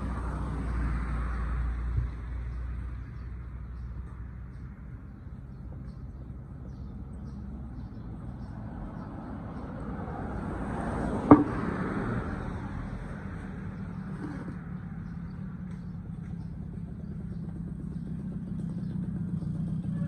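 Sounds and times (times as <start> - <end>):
motor vehicle passing: 0.0 - 20.0
sharp knock: 11.3 - 11.6.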